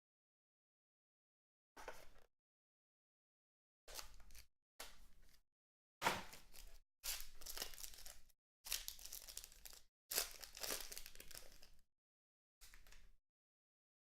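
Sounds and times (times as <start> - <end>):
plastic wrapping tearing: 6.4 - 11.8.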